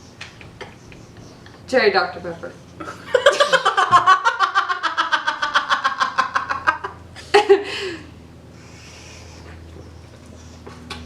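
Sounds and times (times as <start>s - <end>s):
person laughing: 2.8s - 8.1s.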